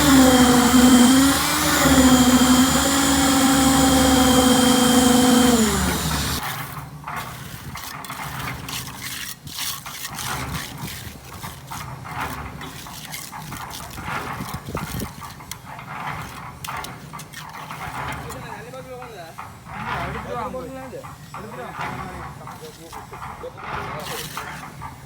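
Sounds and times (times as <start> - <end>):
engine winding down: 0.0 - 6.4
wet concrete scraping and splashing: 7.3 - 15.4.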